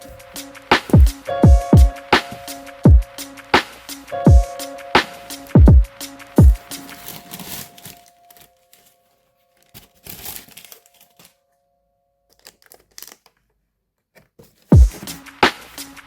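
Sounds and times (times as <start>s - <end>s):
packaging crinkling: 6.5s - 11.4s, 12.3s - 13.6s.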